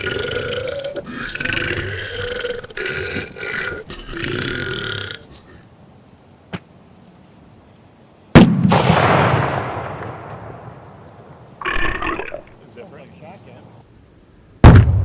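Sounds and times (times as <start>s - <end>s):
man belching: 0.0s - 5.5s
loud explosion bang: 14.6s - 15.0s.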